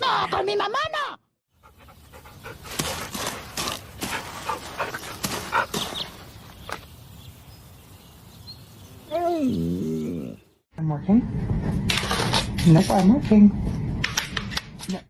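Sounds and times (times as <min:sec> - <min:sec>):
dog panting: 0:01.6 - 0:06.3.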